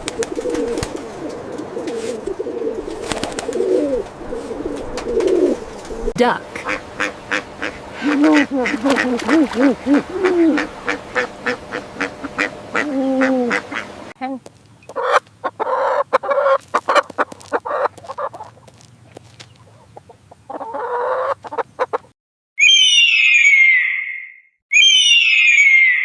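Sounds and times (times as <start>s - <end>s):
harsh bird calls: 5.0s - 14.1s, 22.6s - 26.0s
duck quacking: 6.6s - 14.0s.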